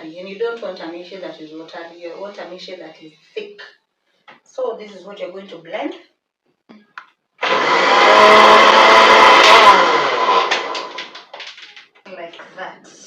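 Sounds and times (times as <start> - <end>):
blender whining: 7.4 - 11.3.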